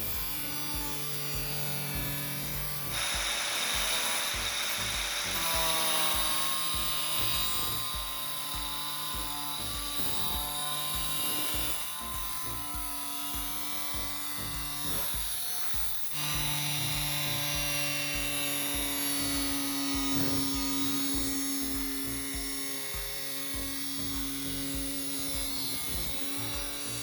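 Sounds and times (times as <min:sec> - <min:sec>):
music with thumping beat: 0:00.0 - 0:27.0
rushing hissing noise: 0:00.0 - 0:27.0.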